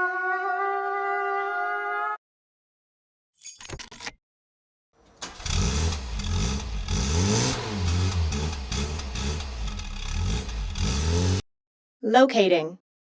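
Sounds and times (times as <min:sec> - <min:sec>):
person singing: 0:00.0 - 0:02.2
engine running and revving: 0:05.1 - 0:11.4.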